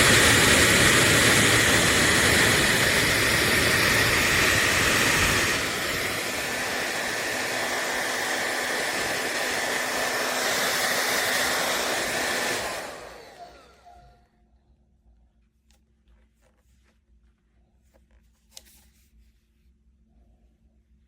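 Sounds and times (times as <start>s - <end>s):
hair dryer blowing and whining: 0.0s - 14.2s.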